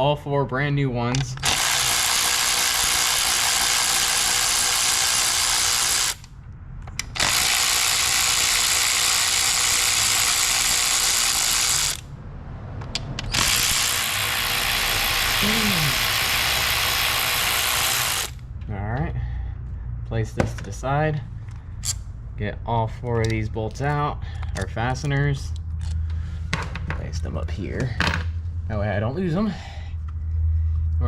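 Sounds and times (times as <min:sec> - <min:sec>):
powered ratchet running: 0:01.4 - 0:06.3, 0:07.0 - 0:12.1, 0:13.2 - 0:18.4.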